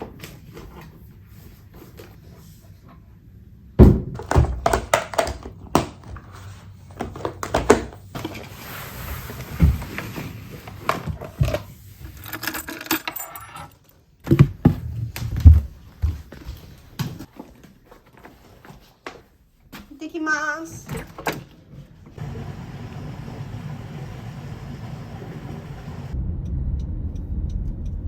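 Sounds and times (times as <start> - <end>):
heavy thump: 3.8 - 4.2.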